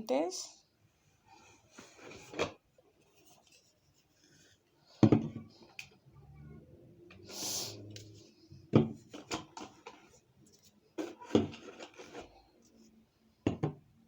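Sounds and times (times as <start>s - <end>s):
rustling and scraping: 1.2s - 5.8s, 7.2s - 13.0s.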